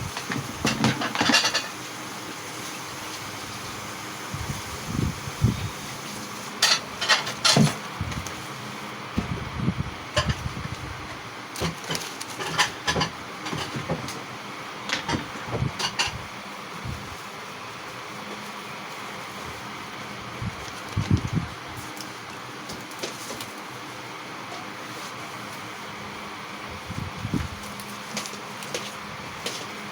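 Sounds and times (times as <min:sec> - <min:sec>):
utensils and dishes clinking: 0:00.1 - 0:01.8, 0:06.6 - 0:07.8, 0:10.2 - 0:10.5, 0:11.6 - 0:14.2, 0:14.9 - 0:16.2.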